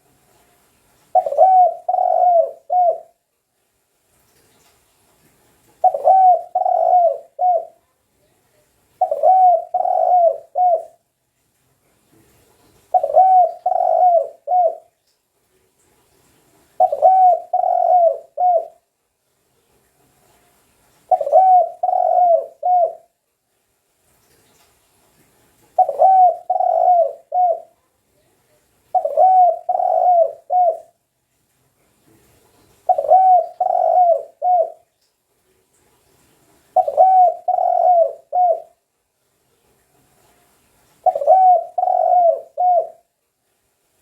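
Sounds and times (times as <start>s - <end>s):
dove cooing: 1.1s - 3.2s, 5.8s - 7.8s, 9.0s - 11.0s, 12.9s - 14.9s, 16.8s - 18.8s, 21.1s - 23.2s, 25.8s - 27.8s, 28.9s - 31.0s, 32.9s - 34.9s, 36.8s - 38.8s, 41.0s - 43.1s.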